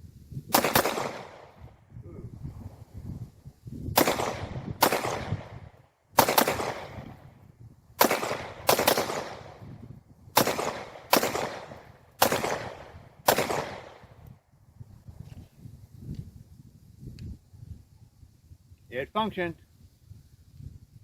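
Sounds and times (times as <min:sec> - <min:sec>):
pistol shots with echo: 0:00.5 - 0:01.5, 0:04.0 - 0:05.6, 0:06.2 - 0:07.2, 0:08.0 - 0:09.6, 0:10.4 - 0:14.1.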